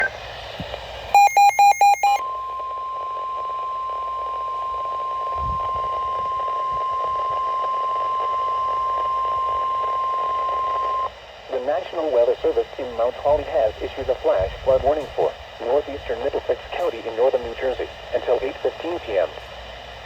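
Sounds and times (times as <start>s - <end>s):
quick beeps: 1.2s - 2.2s
steady high alarm tone: 1.2s - 2.2s
faint radio hiss: 11.4s - 19.6s.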